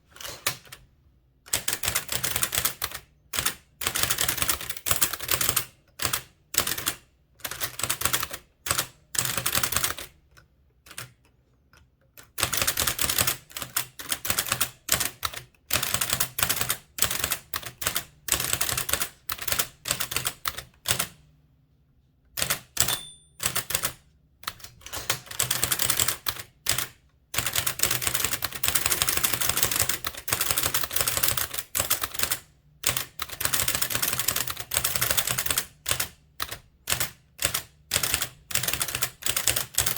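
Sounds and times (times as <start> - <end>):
typewriter bell ring: 22.8 - 23.9.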